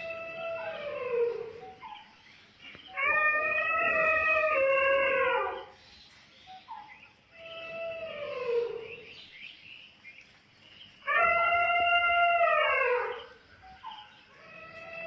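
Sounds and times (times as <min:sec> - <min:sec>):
long animal calls: 0:00.0 - 0:02.1, 0:02.9 - 0:05.8, 0:11.0 - 0:15.0.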